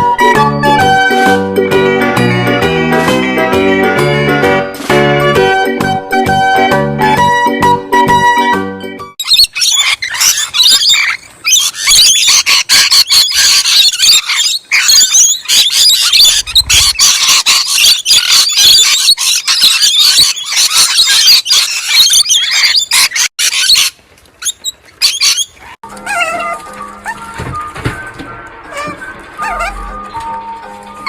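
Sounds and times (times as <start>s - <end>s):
small animals squealing and chirping: 9.2s - 27.3s, 28.7s - 31.0s.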